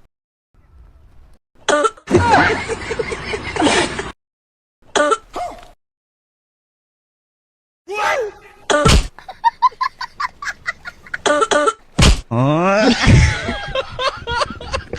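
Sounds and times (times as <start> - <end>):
loud sharp smacks: 8.8 - 9.2, 12.0 - 12.3
long falling vocal cry: 12.3 - 13.1.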